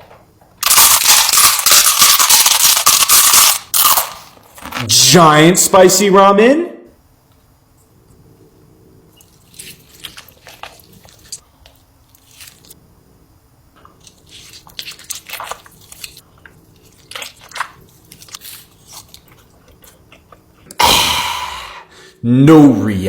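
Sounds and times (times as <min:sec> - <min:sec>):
wet chewing and biting noodles: 0:09.2 - 0:12.8, 0:13.8 - 0:20.8.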